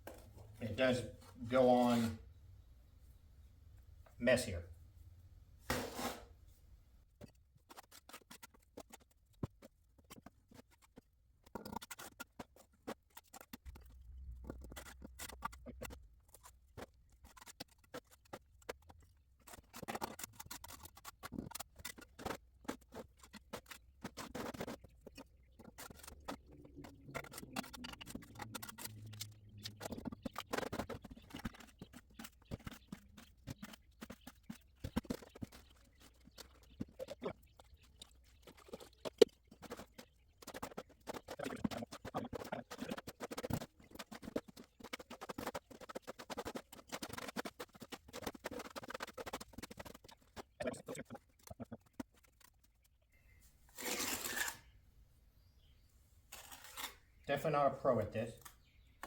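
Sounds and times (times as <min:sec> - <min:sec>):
trowel scraping mortar: 0:01.4 - 0:02.2, 0:05.7 - 0:06.3, 0:14.6 - 0:52.5, 0:53.7 - 0:54.7.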